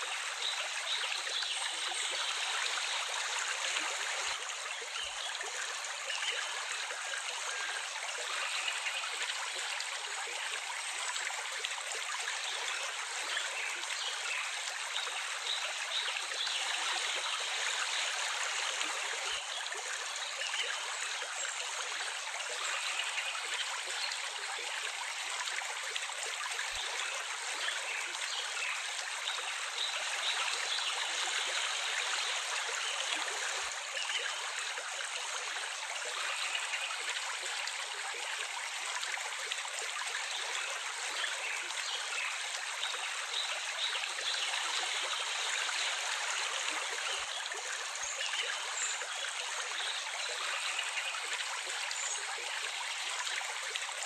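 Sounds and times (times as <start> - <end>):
running water flowing: 0.0 - 54.0.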